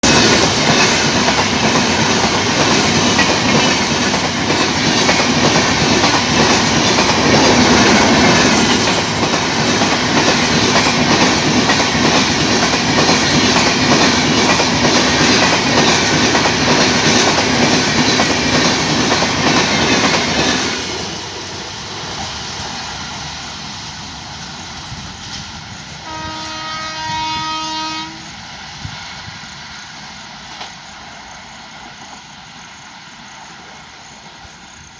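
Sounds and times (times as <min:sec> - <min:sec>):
train rumbling and rattling on track: 0:00.0 - 0:34.9
train horn: 0:26.0 - 0:28.4.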